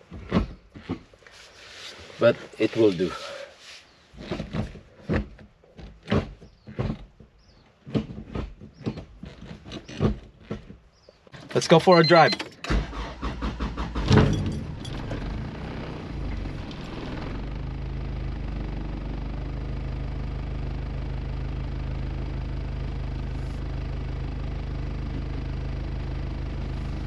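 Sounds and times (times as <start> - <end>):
car engine idling: 10.8 - 27.0
starter cranking engine: 11.4 - 17.6.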